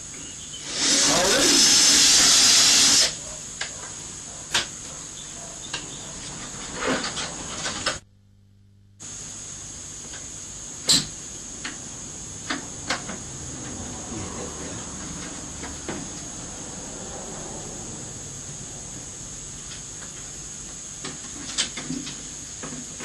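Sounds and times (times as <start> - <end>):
power drill boring plastic: 0.6 - 3.2.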